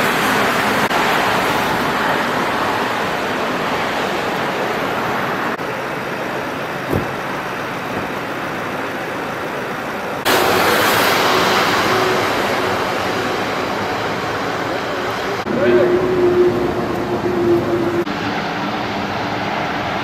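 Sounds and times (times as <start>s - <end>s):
road traffic noise: 0.0s - 20.0s
short thump: 6.9s - 7.2s.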